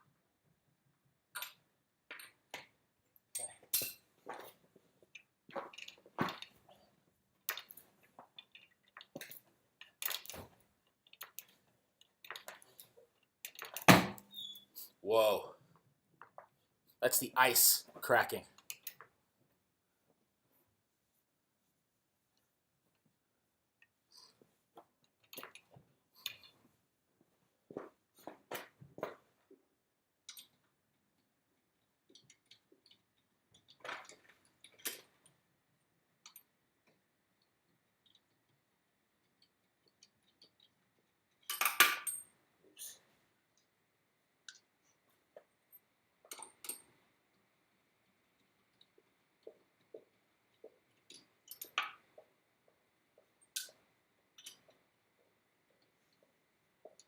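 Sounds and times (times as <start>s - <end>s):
tools clinking and knocking: 1.3s - 6.8s, 7.5s - 14.1s, 39.2s - 43.0s, 45.3s - 47.5s, 48.4s - 57.0s.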